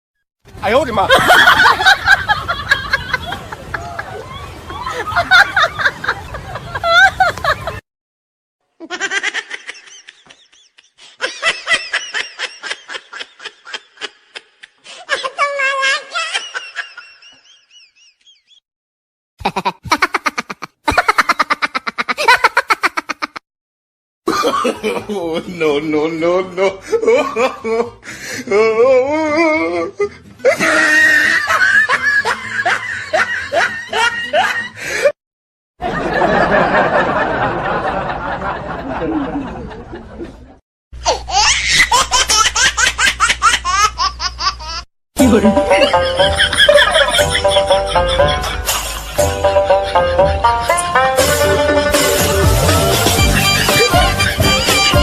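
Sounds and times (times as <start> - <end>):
high-pitched laughing: 8.8 - 18.4, 19.4 - 23.4, 26.9 - 34.7, 41.0 - 55.0.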